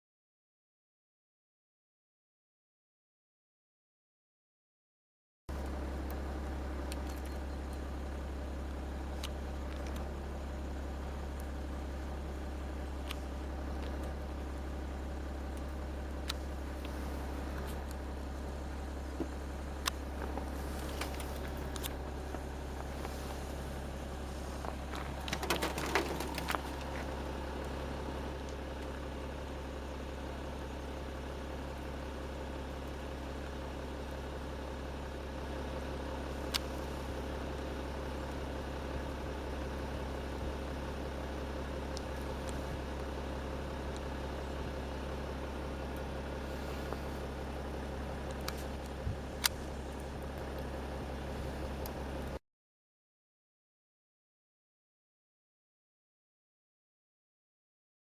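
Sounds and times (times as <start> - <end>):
car engine idling: 5.5 - 52.4
scattered clicks: 19.8 - 22.0
rustling: 20.0 - 28.0.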